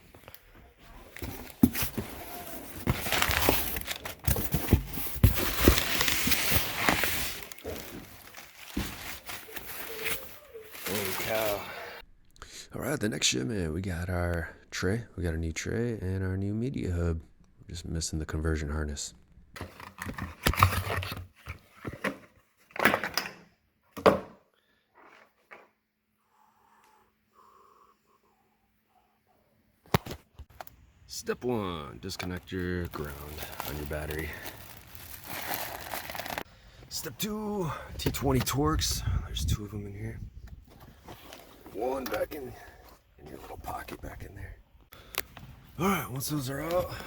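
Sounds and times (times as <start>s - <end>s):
packaging crinkling and rustling: 1.1s - 11.6s, 32.1s - 36.5s.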